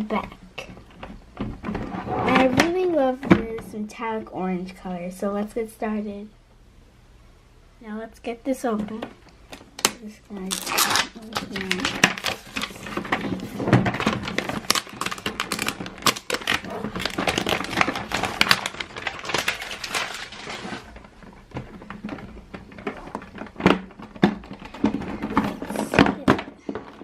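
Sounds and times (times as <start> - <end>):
packaging crinkling: 9.6 - 27.0.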